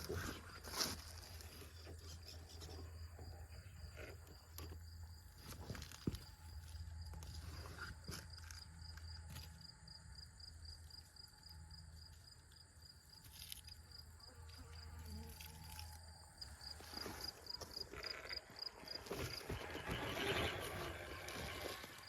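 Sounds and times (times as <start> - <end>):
insects chirping: 0.0 - 22.0.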